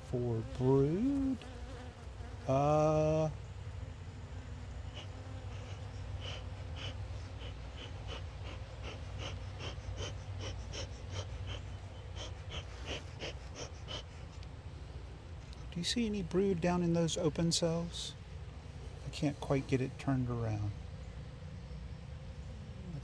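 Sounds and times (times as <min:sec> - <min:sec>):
honeybees buzzing: 0:00.0 - 0:16.8.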